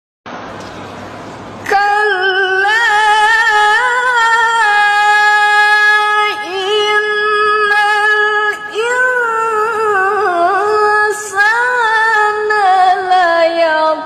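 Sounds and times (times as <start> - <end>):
woman reciting melodically: 1.6 - 14.0.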